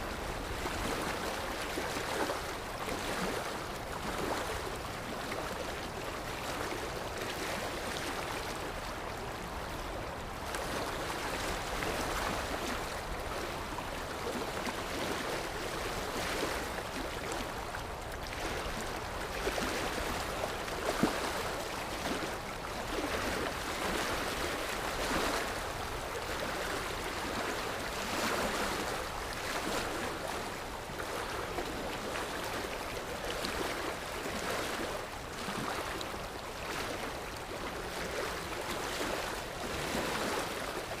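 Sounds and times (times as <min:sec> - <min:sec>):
sea waves washing ashore: 0:00.0 - 0:41.0.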